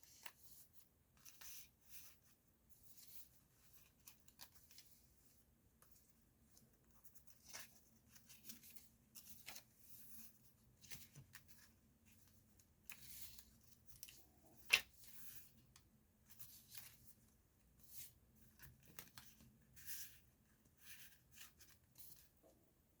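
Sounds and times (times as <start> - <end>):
paper pages rustling: 0.0 - 15.5.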